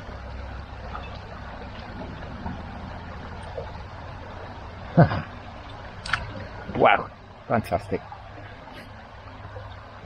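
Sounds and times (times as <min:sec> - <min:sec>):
low rumble on microphone: 0:00.0 - 0:10.0.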